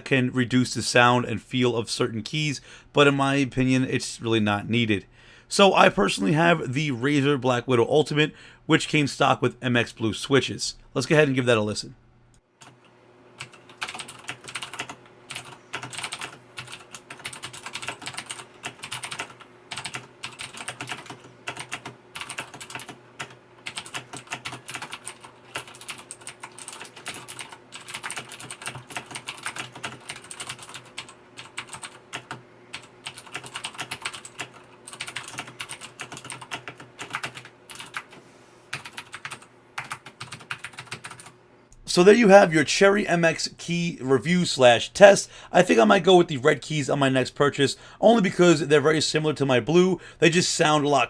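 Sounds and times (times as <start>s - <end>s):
fast typing on mechanical keyboard: 13.4s - 38.1s, 38.7s - 41.3s.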